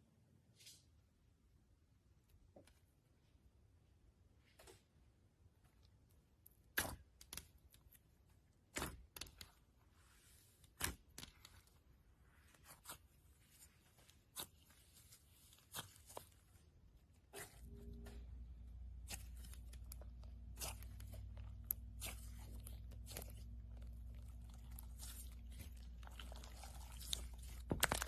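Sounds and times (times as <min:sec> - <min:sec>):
faint slime crackle: 0:06.0 - 0:28.0.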